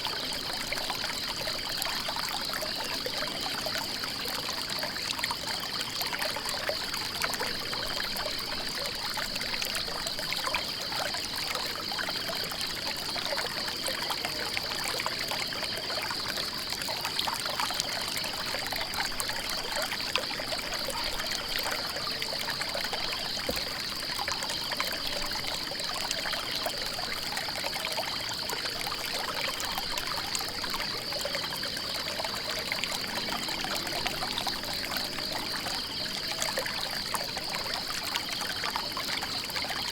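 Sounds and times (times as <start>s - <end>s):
stream water trickling: 0.0s - 39.9s.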